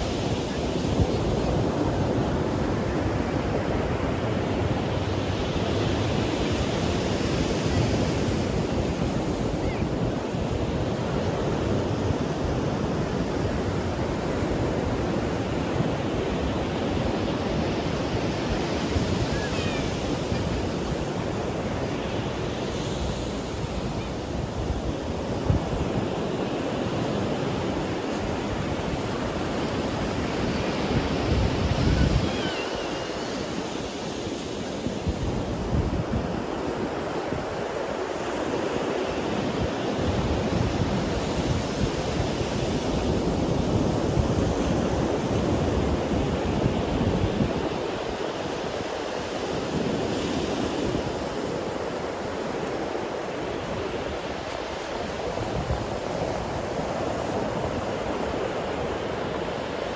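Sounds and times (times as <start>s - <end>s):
wind buffeting microphone: 0.0s - 38.5s
ocean waves breaking on beach: 0.0s - 59.9s.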